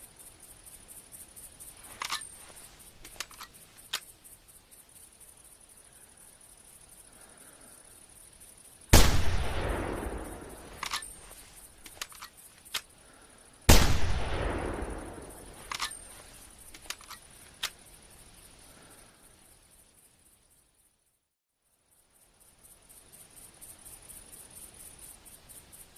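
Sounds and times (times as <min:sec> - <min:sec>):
rifle bolt metallic clicks: 0:01.9 - 0:02.4, 0:03.0 - 0:04.1, 0:10.6 - 0:12.9, 0:15.6 - 0:17.8
rifle shots with long echo: 0:08.9 - 0:11.3, 0:13.7 - 0:16.1.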